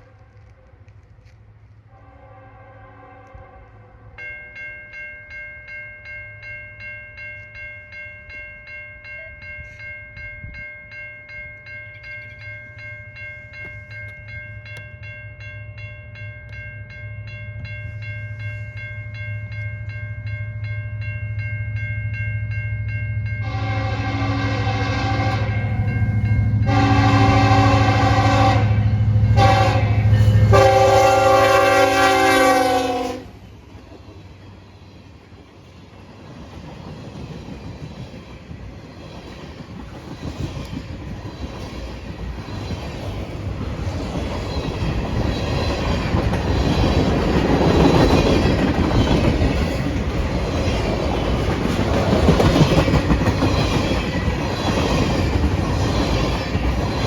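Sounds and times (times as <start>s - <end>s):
train air horn: 1.9s - 4.2s, 23.4s - 25.7s, 26.6s - 33.4s
crossing bell ringing: 4.0s - 33.3s
diesel freight train rumble: 16.8s - 57.0s.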